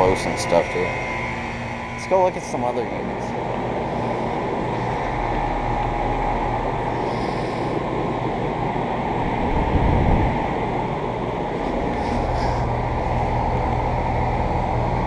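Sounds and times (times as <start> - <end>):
air conditioner unit rushing: 0.0 - 15.0
low rumble: 0.0 - 15.0.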